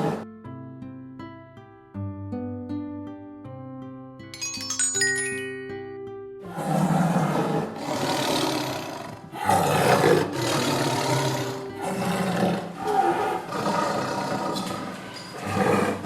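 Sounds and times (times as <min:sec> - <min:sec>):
tiger roaring and growling: 0:00.0 - 0:00.2, 0:06.5 - 0:16.0
faint background music: 0:06.3 - 0:16.0.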